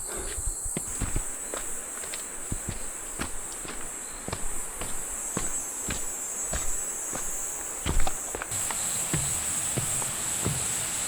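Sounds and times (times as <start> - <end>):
footsteps on trail steps: 0.0 - 11.0
high-pitched insect drone: 0.0 - 11.0.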